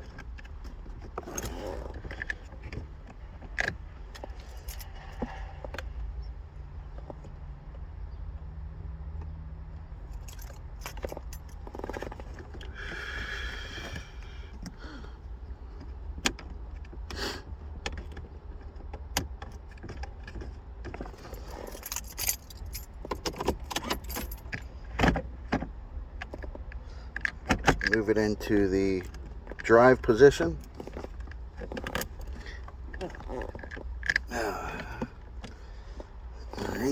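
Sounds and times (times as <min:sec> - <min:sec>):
keys jangling: 0:00.0 - 0:02.8, 0:03.6 - 0:05.7, 0:10.0 - 0:12.7, 0:21.0 - 0:24.7, 0:27.1 - 0:35.4.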